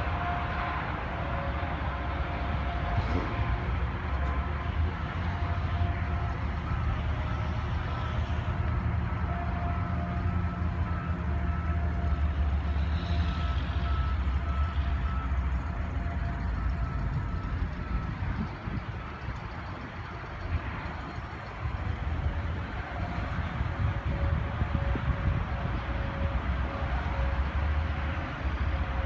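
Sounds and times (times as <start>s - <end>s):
heavy vehicle engine rumbling: 0.0s - 29.0s.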